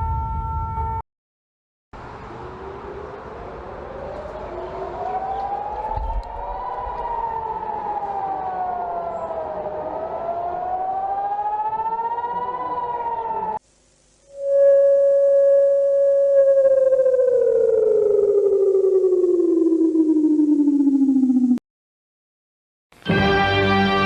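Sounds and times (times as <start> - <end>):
warning siren wailing: 2.2 - 13.6, 14.3 - 21.6.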